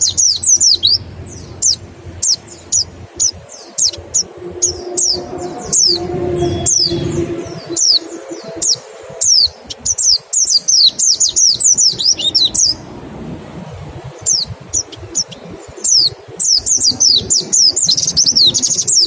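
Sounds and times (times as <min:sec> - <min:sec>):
bird giving sharp high calls: 0:00.0 - 0:12.8.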